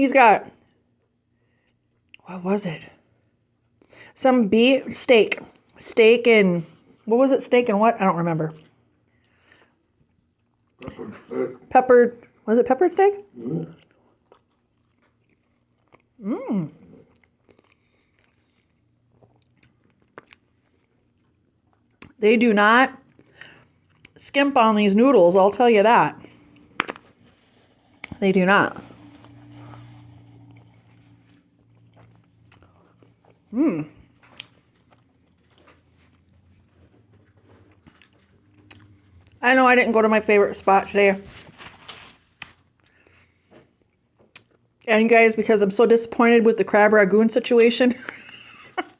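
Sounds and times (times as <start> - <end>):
person chewing food: 8.6 - 10.9, 13.2 - 22.2, 23.0 - 24.2, 26.2 - 39.4, 42.3 - 44.8
person humming: 33.5 - 34.0.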